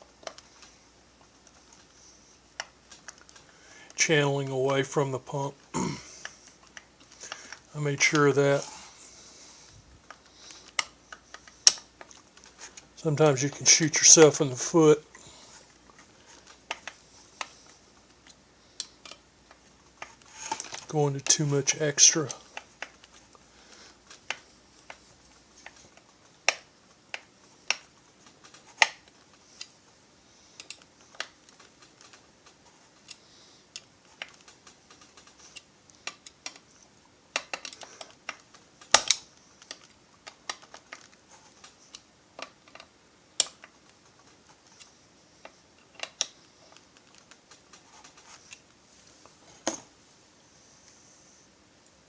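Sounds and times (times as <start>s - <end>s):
clicks and taps of small parts: 0.2s - 2.0s, 15.9s - 23.2s, 24.1s - 29.7s, 30.5s - 48.7s.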